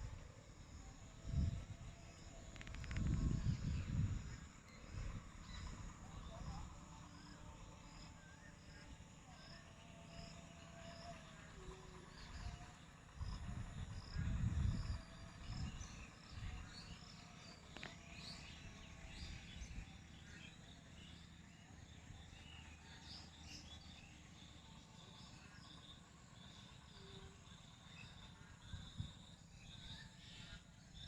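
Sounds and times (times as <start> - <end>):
insects chirping: 0.0 - 31.0.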